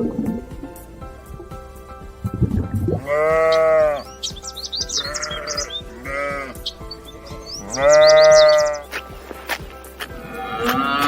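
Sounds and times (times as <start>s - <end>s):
farm animal bleating: 3.0s - 9.0s, 10.2s - 11.0s.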